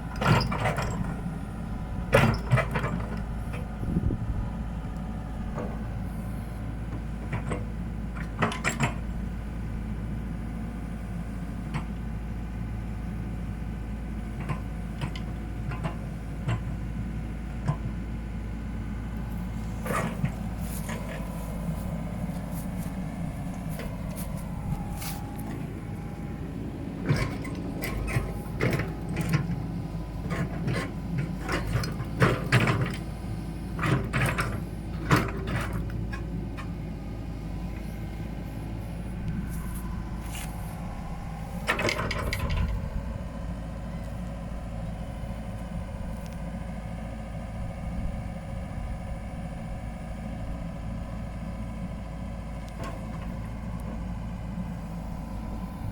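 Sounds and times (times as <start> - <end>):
excavator diesel engine running: 0.0 - 55.9.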